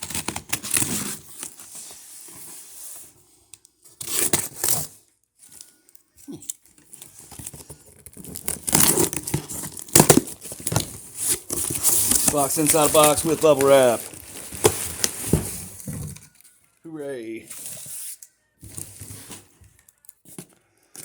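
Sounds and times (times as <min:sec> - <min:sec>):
cardboard box tearing: 0:00.0 - 0:02.7, 0:04.0 - 0:05.0, 0:07.0 - 0:16.2
packing material crinkling: 0:06.3 - 0:16.8.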